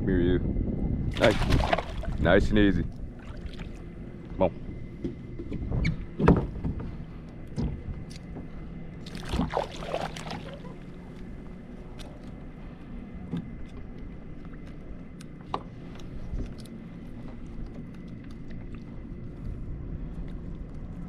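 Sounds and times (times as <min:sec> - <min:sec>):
water splashing: 0:01.1 - 0:02.2, 0:03.1 - 0:03.8, 0:09.0 - 0:10.8
water sloshing: 0:01.1 - 0:02.3, 0:02.9 - 0:05.0, 0:08.2 - 0:12.2.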